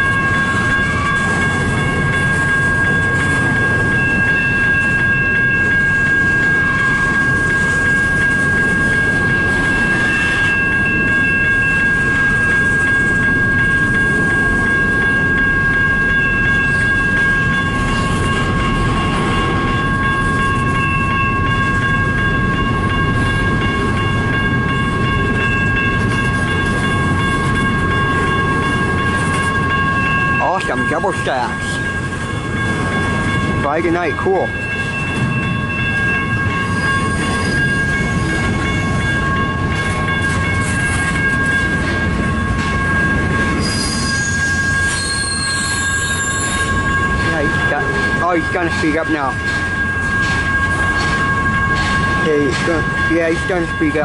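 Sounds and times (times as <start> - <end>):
train wheels rumbling on rail: 0.0 - 54.0
high-pitched wheel squeal: 43.6 - 47.0.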